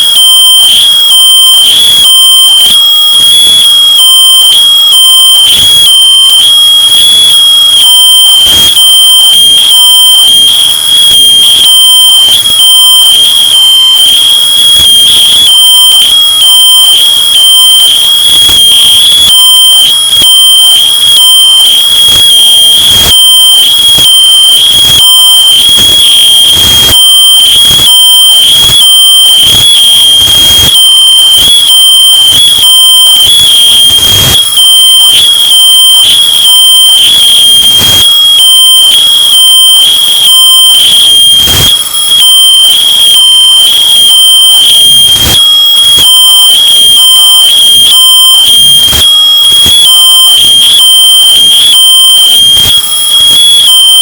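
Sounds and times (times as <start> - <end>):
distorted smoke detector beeping: 0.0 - 54.0.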